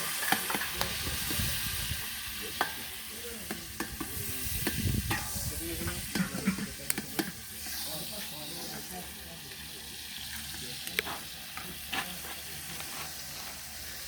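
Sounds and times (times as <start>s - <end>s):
food sizzling: 0.0s - 14.0s
utensil scraping a pot: 3.8s - 8.9s.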